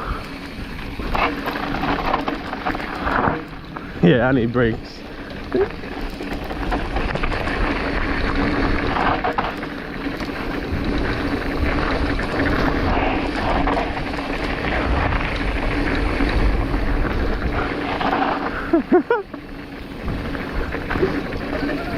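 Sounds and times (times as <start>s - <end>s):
tyres rumbling on dirt: 0.0s - 21.9s
wind rushing over microphone: 10.4s - 18.9s.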